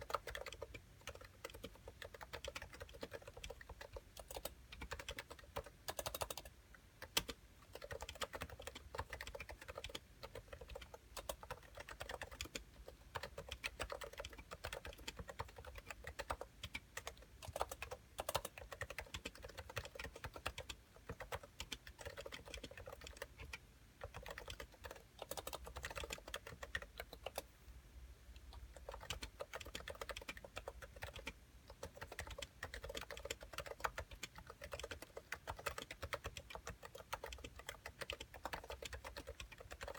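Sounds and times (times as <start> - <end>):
fast typing on a keyboard: 0.0 - 27.5, 28.5 - 39.9.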